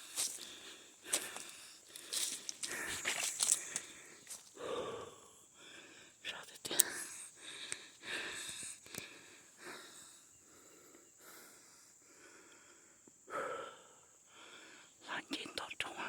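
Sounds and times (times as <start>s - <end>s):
man breathing close to microphone: 0.0s - 15.0s
soft whispers: 6.2s - 7.3s, 15.0s - 16.0s
faint clicks: 6.5s - 9.2s.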